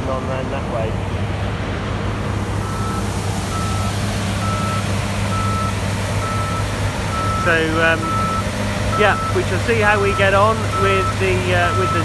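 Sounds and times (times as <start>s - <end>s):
engine droning: 0.0s - 12.0s
reversing alarm beeping: 2.6s - 12.0s.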